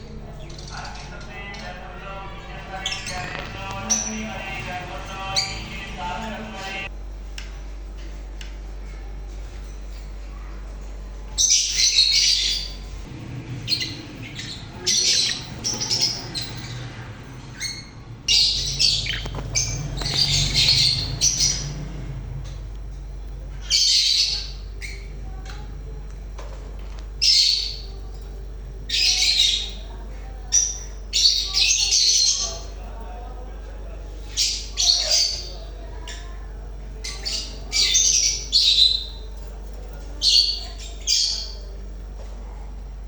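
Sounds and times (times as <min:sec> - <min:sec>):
steady low hum: 0:00.0 - 0:43.0
parrots squawking: 0:00.2 - 0:06.9, 0:11.4 - 0:22.5, 0:23.6 - 0:25.1, 0:28.9 - 0:29.9, 0:30.5 - 0:32.8, 0:34.3 - 0:36.3, 0:37.0 - 0:39.3.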